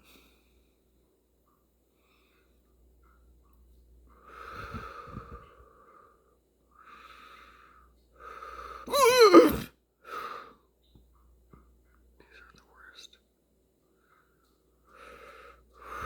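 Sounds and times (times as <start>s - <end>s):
person hiccuping: 8.9s - 9.7s
strained vocal wheeze: 8.9s - 9.7s.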